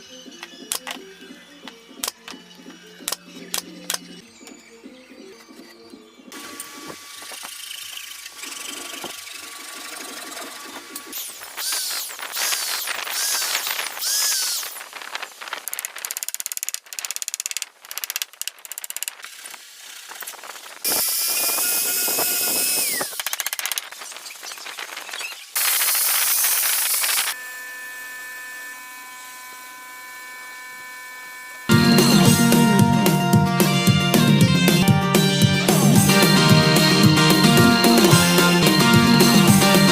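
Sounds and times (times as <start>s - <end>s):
woodworking power tools running: 5.4s - 15.5s, 20.9s - 23.2s, 25.6s - 39.9s.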